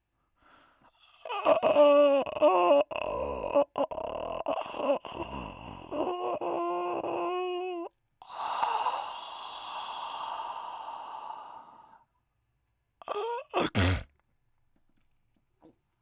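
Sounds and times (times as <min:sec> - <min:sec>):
person moaning: 0:13.1 - 0:14.0.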